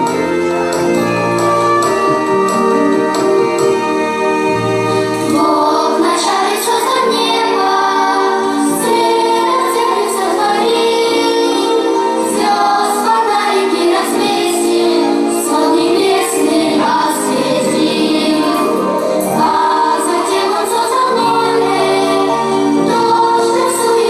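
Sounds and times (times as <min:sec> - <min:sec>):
keyboard accompaniment: 0:00.0 - 0:24.0
children singing: 0:05.2 - 0:24.0.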